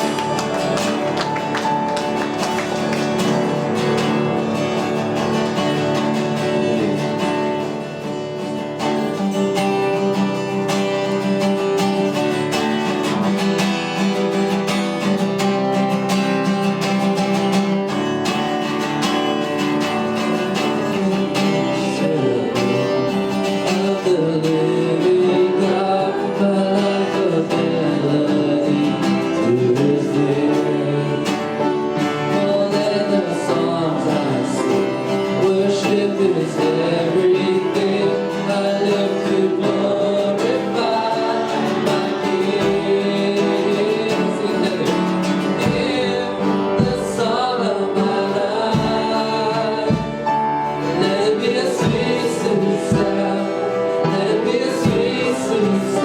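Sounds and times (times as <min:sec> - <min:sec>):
people singing along: 0:00.0 - 0:08.1, 0:20.4 - 0:56.0
acoustic guitar strumming: 0:00.0 - 0:56.0.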